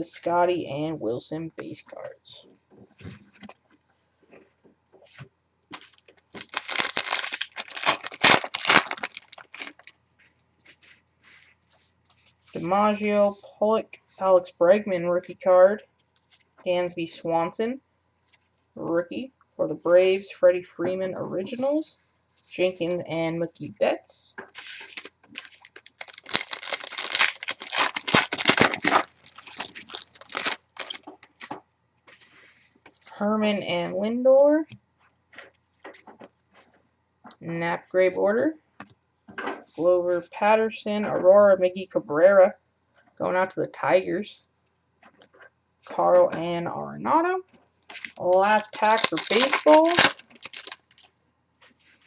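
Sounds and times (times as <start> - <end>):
card pack wrapper tearing and crinkling: 5.7 - 10.0, 24.6 - 31.5, 47.9 - 51.1.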